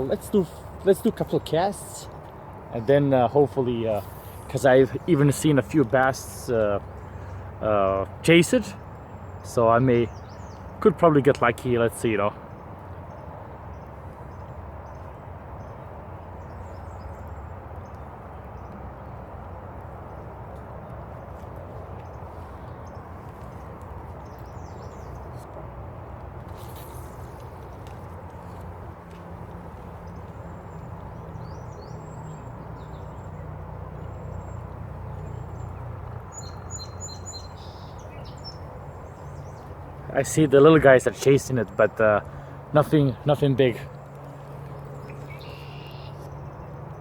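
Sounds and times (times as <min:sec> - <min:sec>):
songbirds chirping: 0:00.0 - 0:47.0
high bird chirps: 0:35.2 - 0:39.7, 0:44.9 - 0:46.4.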